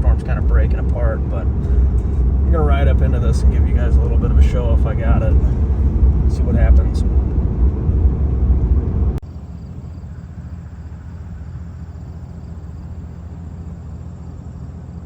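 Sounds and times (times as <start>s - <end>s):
car road noise rumble: 0.0s - 15.0s
low hum: 0.0s - 15.0s
faint high whine: 9.3s - 15.0s.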